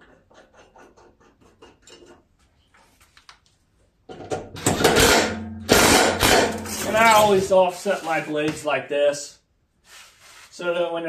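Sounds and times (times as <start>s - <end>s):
loud harsh rattling: 4.6s - 7.5s.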